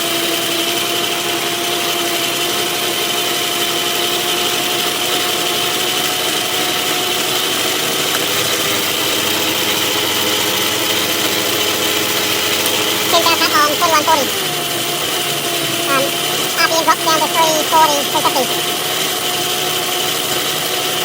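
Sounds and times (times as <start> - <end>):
lathe motor whining: 4.4 - 16.6
lathe cutting steel: 14.3 - 16.9.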